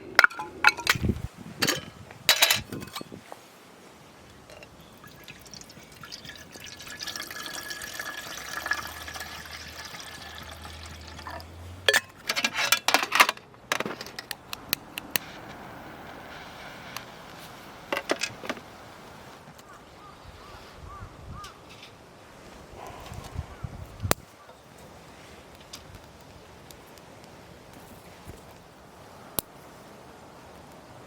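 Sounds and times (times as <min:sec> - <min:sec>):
water pouring into container: 0:05.0 - 0:11.5.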